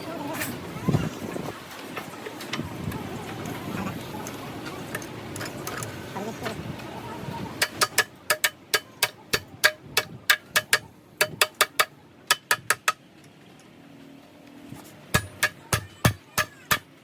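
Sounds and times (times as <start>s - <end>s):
hammer striking metal: 7.6s - 13.0s, 15.1s - 16.9s.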